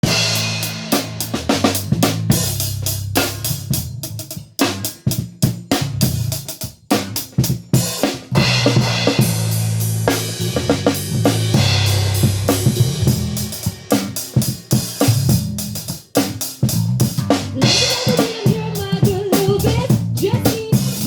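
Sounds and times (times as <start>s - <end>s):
snare drum: 0.0s - 2.6s, 17.2s - 19.9s
low bass notes: 0.0s - 7.4s, 8.4s - 17.9s, 19.5s - 21.0s.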